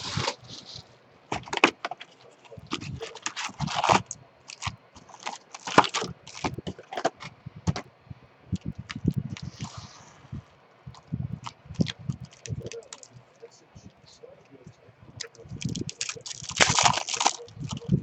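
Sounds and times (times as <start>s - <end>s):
wrappers crinkling and tearing: 0.0s - 7.2s, 11.4s - 13.1s, 15.2s - 18.0s.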